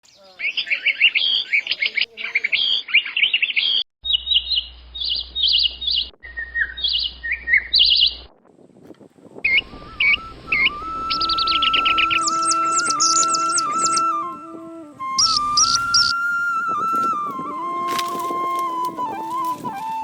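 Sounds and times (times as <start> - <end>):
birds chirping and trilling: 0.0 - 8.3, 9.5 - 16.2.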